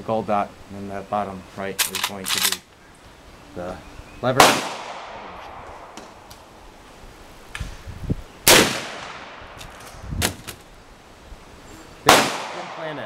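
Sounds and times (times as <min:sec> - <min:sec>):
loud gunshot with echo: 0:04.4 - 0:06.0, 0:08.5 - 0:09.4, 0:12.1 - 0:13.0
quiet sharp crack: 0:04.4 - 0:06.5.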